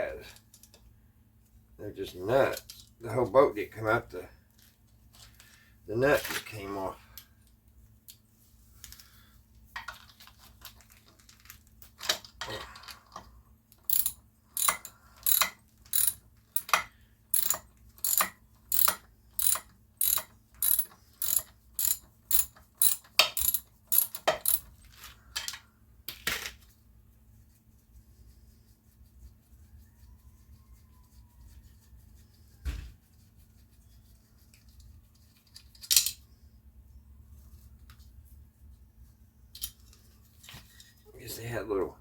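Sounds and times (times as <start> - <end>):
ratchet wrench clicking: 13.8 - 24.7.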